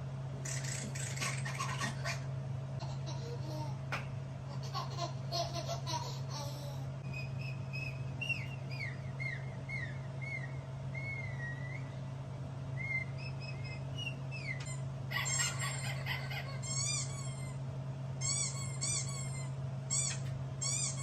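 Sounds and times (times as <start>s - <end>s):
low hum: 0.0s - 21.0s
bird chirping: 7.0s - 12.0s, 12.8s - 17.1s.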